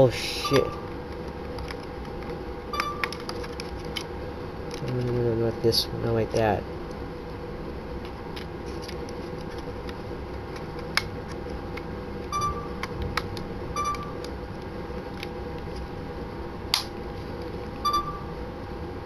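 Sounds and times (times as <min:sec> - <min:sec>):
short electronic beeps: 0:00.4 - 0:00.9, 0:02.7 - 0:03.1, 0:12.3 - 0:12.8, 0:13.8 - 0:14.2, 0:17.8 - 0:18.3.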